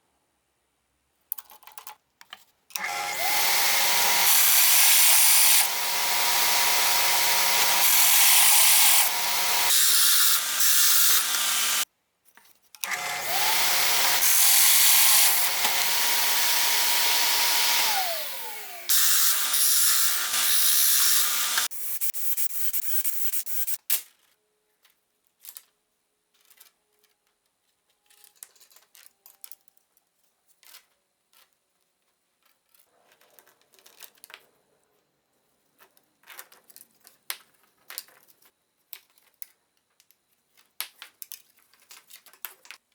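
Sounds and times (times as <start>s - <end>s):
power tool motor whining: 2.8s - 11.8s, 12.8s - 23.8s.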